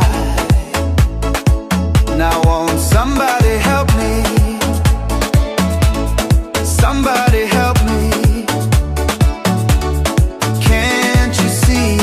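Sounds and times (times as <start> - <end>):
upbeat dance music: 0.0 - 12.0.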